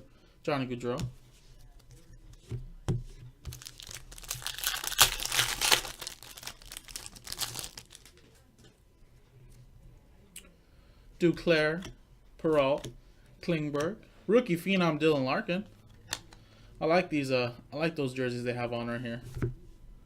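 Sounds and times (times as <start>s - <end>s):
cards and wrapper crinkling: 3.5s - 8.3s.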